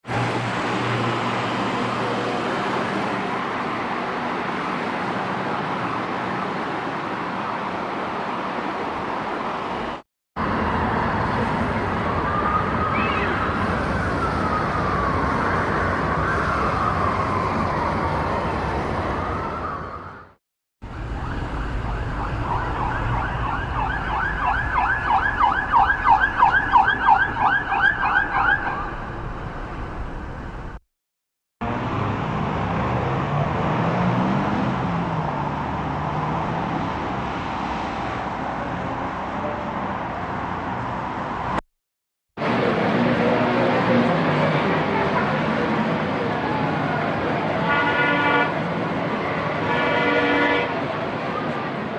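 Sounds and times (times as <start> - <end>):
city street traffic: 0.0 - 30.8, 31.6 - 41.6, 42.4 - 51.9
wailing emergency siren: 1.2 - 3.0, 10.7 - 30.4
siren yelping: 19.1 - 29.4.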